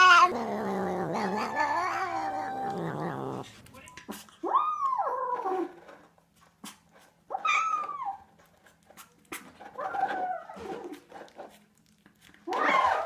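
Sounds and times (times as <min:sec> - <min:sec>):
pet making drawn-out calls: 0:00.0 - 0:03.4.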